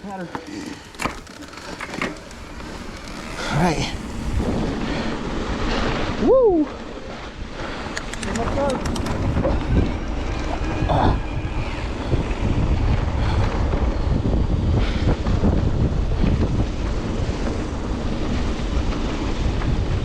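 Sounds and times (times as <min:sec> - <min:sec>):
bike knocks and rattles: 0:00.0 - 0:04.6
tyres rumbling over dirt: 0:00.0 - 0:07.6
wind buffeting microphone: 0:00.0 - 0:20.0.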